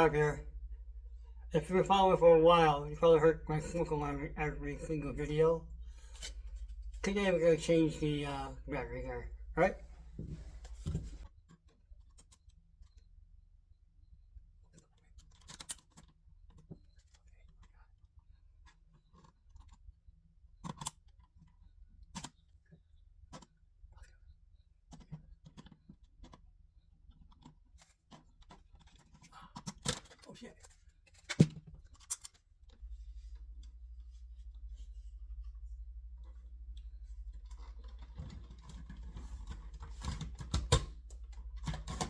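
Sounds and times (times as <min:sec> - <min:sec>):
steady low hum: 0:00.0 - 0:11.3, 0:31.8 - 0:42.0.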